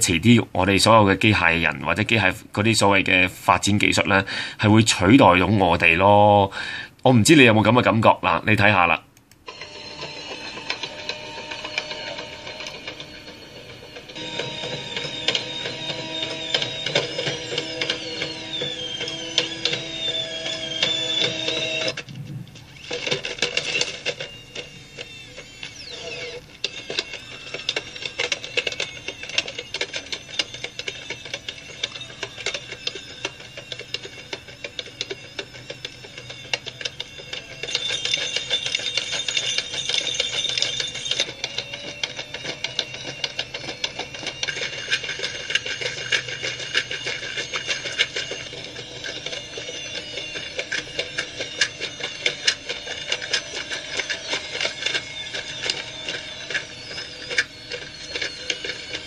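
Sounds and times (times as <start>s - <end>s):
rapid mechanical clicking: 9.1s - 59.0s
robot dog motors whining: 9.5s - 59.0s.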